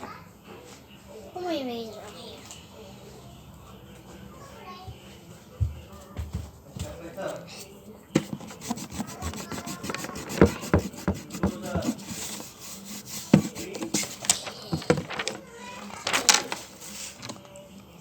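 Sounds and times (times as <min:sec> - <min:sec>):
pencil scratching on paper: 0:08.2 - 0:15.0.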